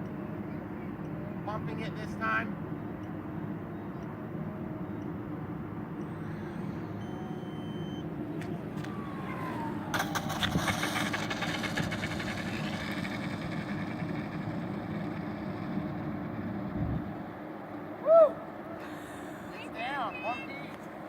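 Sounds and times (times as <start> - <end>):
model plane whine: 6.1 - 17.2
landing gear clattering on runway: 8.4 - 16.5.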